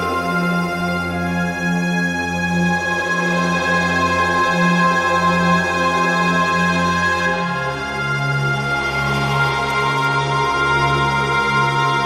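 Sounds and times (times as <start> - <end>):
sustained tones over low drone: 0.0 - 12.0.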